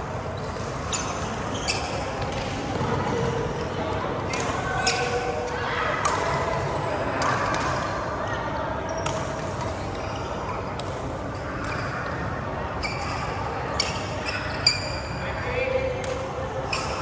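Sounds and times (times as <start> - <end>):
murmur of voices: 0.0 - 17.0
shoes squeaking on court floor: 0.4 - 3.6, 12.8 - 15.2.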